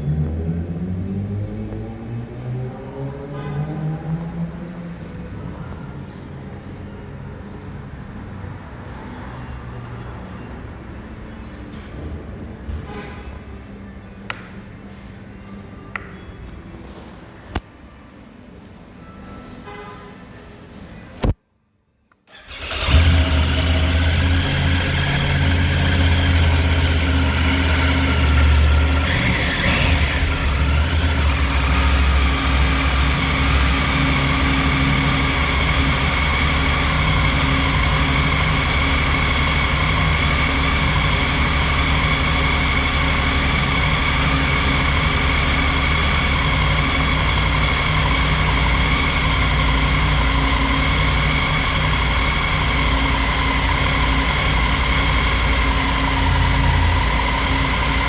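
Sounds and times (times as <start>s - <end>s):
motorcycle engine idling: 22.4s - 58.0s.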